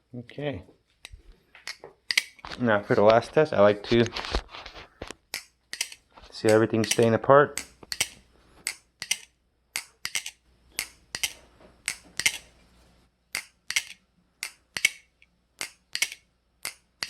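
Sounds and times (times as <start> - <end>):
butterfly knife flipping clicks: 1.0 - 2.4, 5.3 - 12.5.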